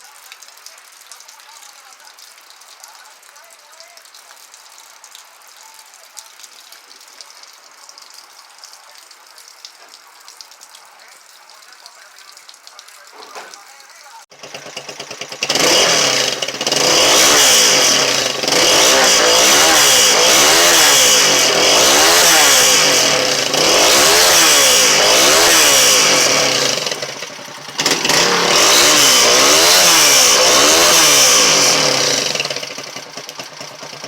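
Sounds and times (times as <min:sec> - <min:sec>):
motorcycle engine revving: 0:14.3 - 0:34.0.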